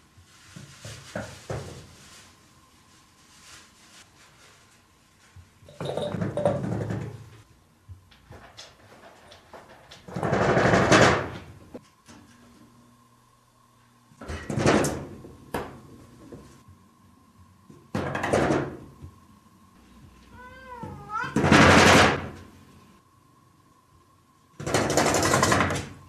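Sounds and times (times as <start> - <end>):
cat meowing: 20.3 - 21.5.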